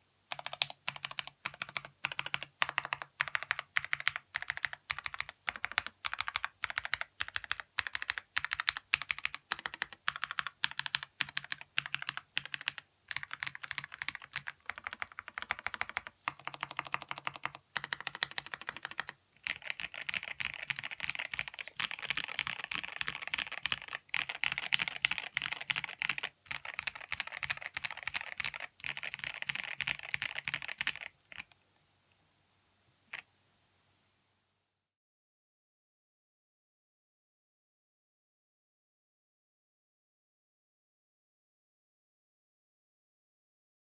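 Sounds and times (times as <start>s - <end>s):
typing on mechanical keyboard: 0.3s - 31.6s.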